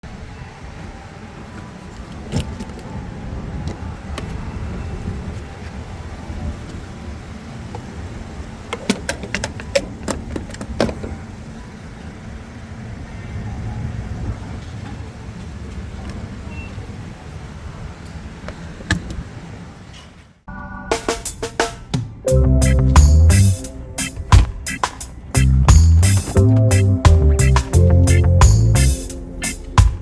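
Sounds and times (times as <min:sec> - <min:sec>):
car engine and road noise: 0:22.2 - 0:30.0.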